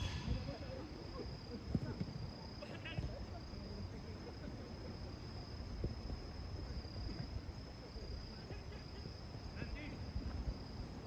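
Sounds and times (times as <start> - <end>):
wind buffeting microphone: 0.0 - 3.2
high-pitched insect trill: 0.0 - 11.0.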